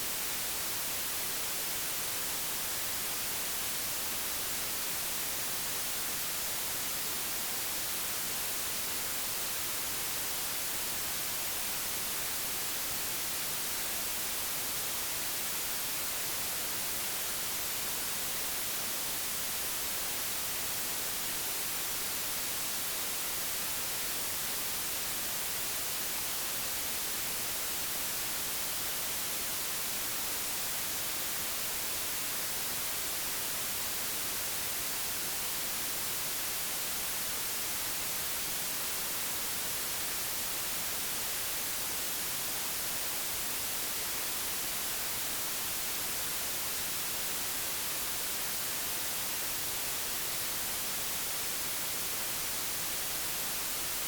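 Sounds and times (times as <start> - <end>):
white noise hiss: 0.0 - 54.0.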